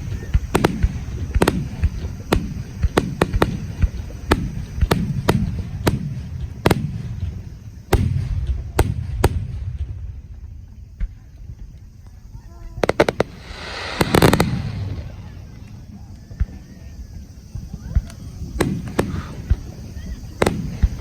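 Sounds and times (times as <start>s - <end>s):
firework bangs: 0.0s - 21.0s
rolling rumble of booms: 12.8s - 21.0s.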